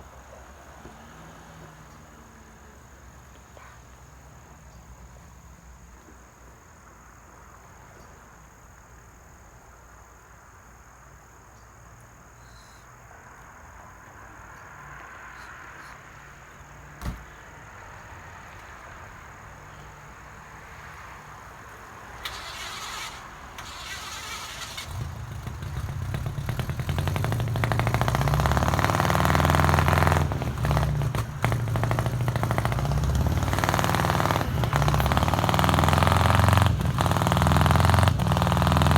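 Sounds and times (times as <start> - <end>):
faint insect chirping: 0.0 - 28.0
car engine revving: 22.1 - 38.9.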